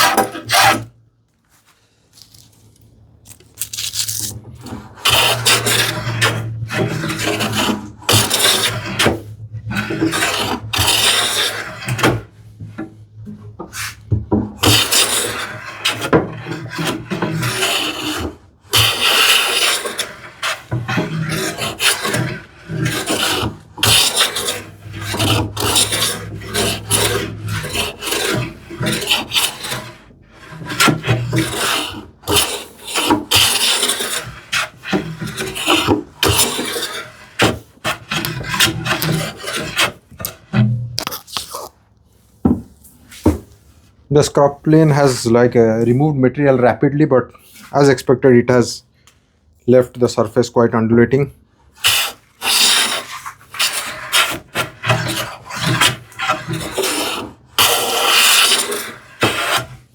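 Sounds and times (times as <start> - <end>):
plane rasping across wood: 0.0 - 0.9, 4.6 - 12.8, 13.6 - 40.6, 44.3 - 45.9, 51.8 - 59.9.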